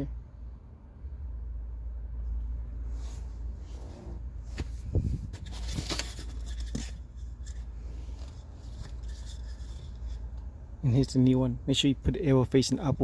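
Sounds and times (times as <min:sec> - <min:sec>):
plastic filter housing scraping: 0:05.0 - 0:10.4.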